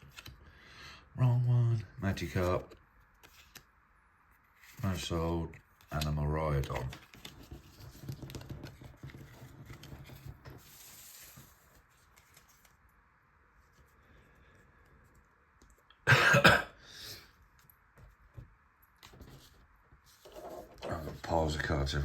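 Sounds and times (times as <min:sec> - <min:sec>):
cards being handled: 0:00.0 - 0:00.4, 0:03.2 - 0:03.7, 0:05.8 - 0:12.9, 0:17.6 - 0:22.0
man coughing: 0:16.0 - 0:16.8.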